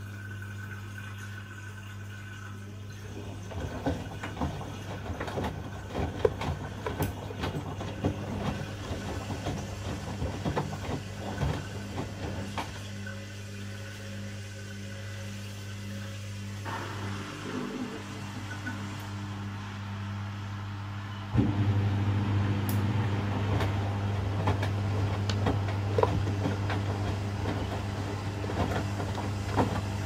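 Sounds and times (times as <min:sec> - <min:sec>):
washing machine hum: 0:00.0 - 0:30.0
tumbling load clicks and knocks: 0:03.5 - 0:12.9, 0:22.8 - 0:30.0.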